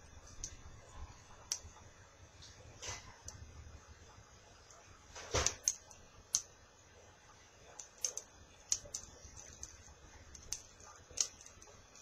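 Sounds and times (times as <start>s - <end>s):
small metal parts clicking: 7.8s - 12.0s.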